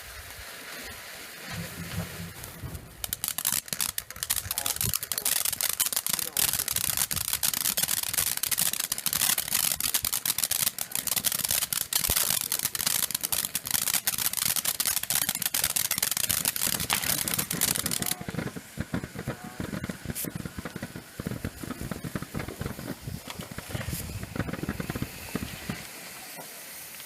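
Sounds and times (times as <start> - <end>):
fireworks crackling: 0.0 - 27.0.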